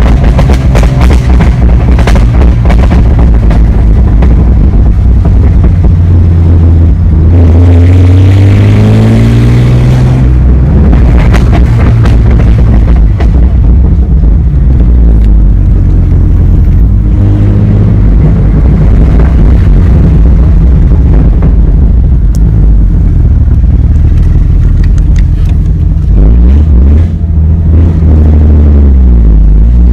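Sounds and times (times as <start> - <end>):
car exhaust accelerating: 0.0 - 29.9
exhaust crackles and pops: 0.0 - 29.9.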